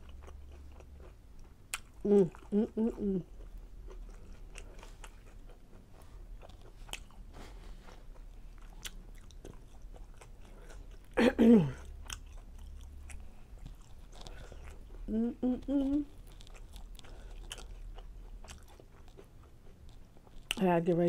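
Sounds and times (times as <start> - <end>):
close chewing with mouth smacks: 0.0 - 21.0
person humming: 2.0 - 3.3, 15.0 - 16.1.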